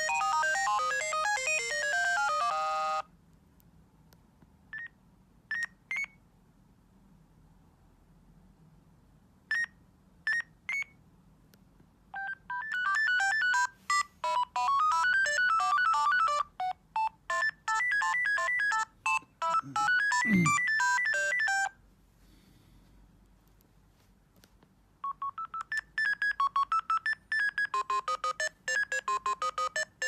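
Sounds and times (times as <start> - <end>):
phone ringtone beeping melody: 0.0 - 3.1, 12.2 - 21.8, 25.0 - 30.0.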